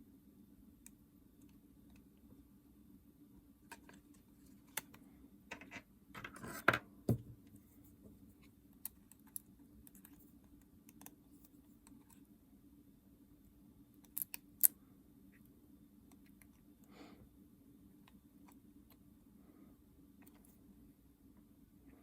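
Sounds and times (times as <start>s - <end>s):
dull knock: 7.1s - 7.4s.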